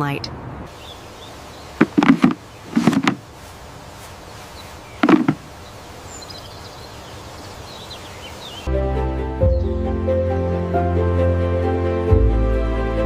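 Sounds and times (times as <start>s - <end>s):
outdoor background noise: 0.0s - 8.7s
short knocks: 1.8s - 3.2s, 5.0s - 5.5s.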